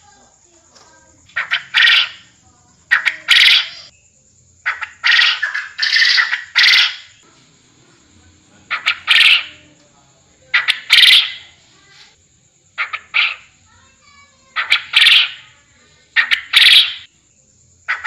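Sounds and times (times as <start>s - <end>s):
quail calling: 1.3s - 2.3s, 2.9s - 3.9s, 4.6s - 7.2s, 8.7s - 9.7s, 10.5s - 11.6s, 12.8s - 13.6s, 14.5s - 15.5s, 16.1s - 17.1s.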